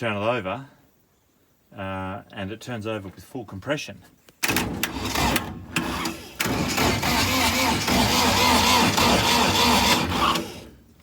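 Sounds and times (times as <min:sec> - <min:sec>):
starter motor cranking engine: 0:04.4 - 0:10.9.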